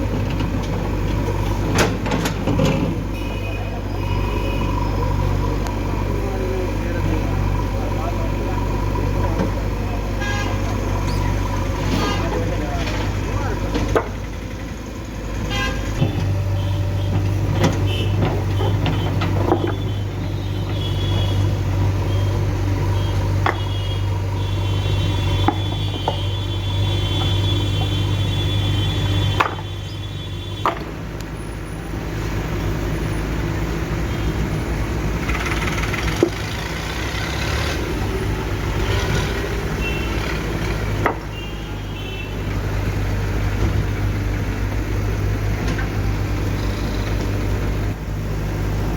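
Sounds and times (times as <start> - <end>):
diesel engine running: 0.0 - 48.9
sharp knocks and clanks: 12.1 - 14.3, 23.4 - 23.7, 29.4 - 29.7, 30.6 - 31.0, 40.3 - 41.3.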